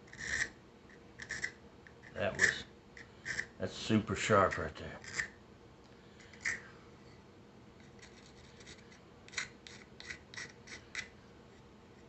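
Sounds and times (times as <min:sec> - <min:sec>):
hand file scraping an edge: 0:00.1 - 0:00.5, 0:03.2 - 0:03.5, 0:07.9 - 0:12.0.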